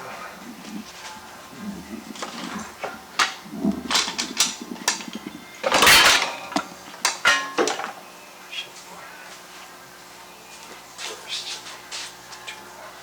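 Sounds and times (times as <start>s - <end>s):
metal tools clanking: 3.9s - 8.0s
metal clattering burst: 5.6s - 6.6s, 7.2s - 7.8s.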